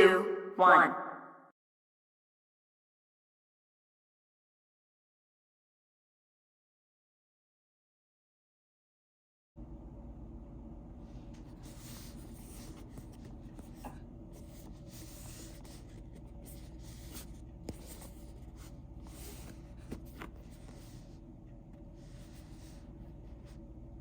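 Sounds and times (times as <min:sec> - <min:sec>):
steady background hum: 0:09.6 - 0:24.0.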